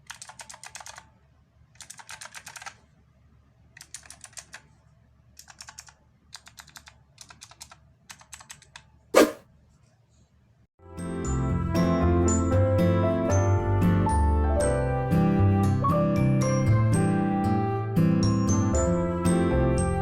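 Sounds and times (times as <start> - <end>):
loud thump: 9.2 - 9.4.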